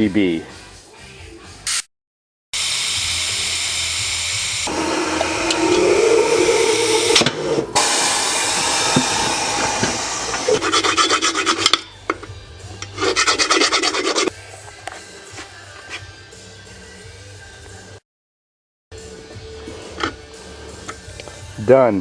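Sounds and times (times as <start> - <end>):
file rasping metal: 4.7 - 12.1, 12.8 - 14.3.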